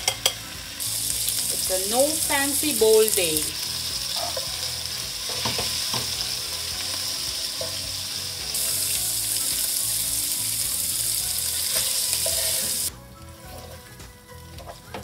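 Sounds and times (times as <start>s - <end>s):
chicken sizzling in hot oil: 0.0s - 15.0s.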